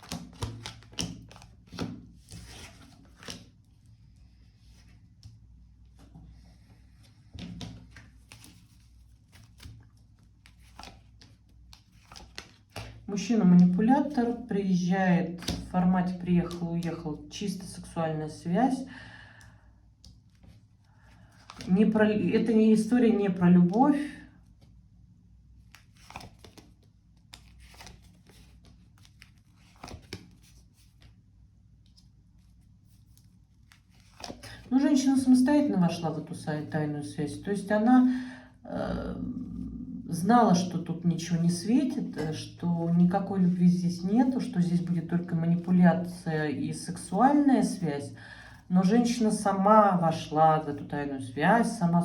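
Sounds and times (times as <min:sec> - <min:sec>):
cards being shuffled: 0:00.0 - 0:03.6, 0:07.4 - 0:14.2, 0:15.4 - 0:15.7, 0:16.4 - 0:17.0, 0:21.3 - 0:21.7, 0:25.6 - 0:31.2, 0:31.8 - 0:35.1
low room hum: 0:00.0 - 0:52.0.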